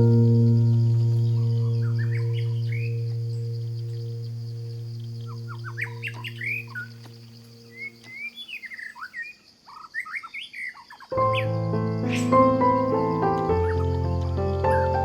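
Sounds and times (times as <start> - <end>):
music with pitched notes: 0.0 - 7.8
low steady drone: 0.0 - 8.1
birds chirping and calling: 0.0 - 15.0.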